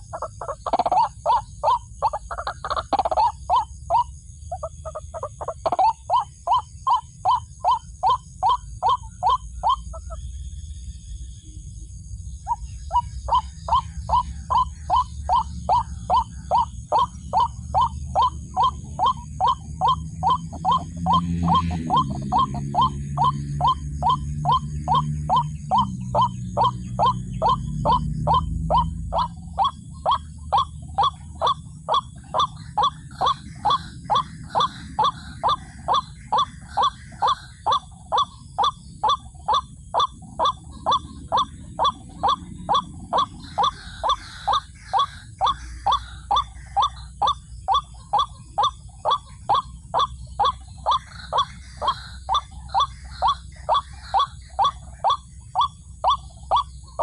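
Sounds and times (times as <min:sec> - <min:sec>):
waterhen calling: 0:00.0 - 0:10.2, 0:12.4 - 0:57.0.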